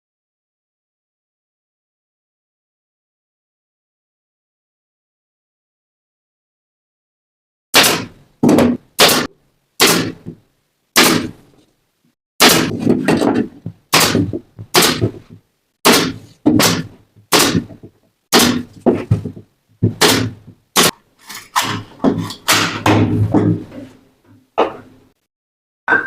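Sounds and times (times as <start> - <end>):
hammer knocking on wood: 12.5 - 21.0.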